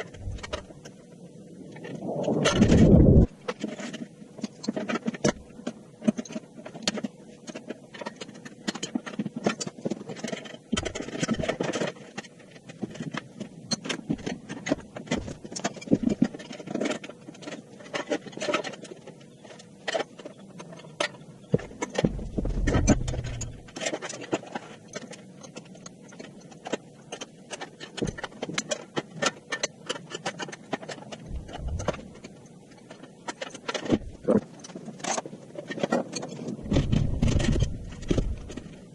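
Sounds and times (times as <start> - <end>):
clatter of metal parts and tools: 0.0 - 0.9, 3.4 - 38.9
low rumble: 0.2 - 0.7, 1.7 - 3.3, 22.0 - 23.7, 31.3 - 32.2, 36.6 - 38.6.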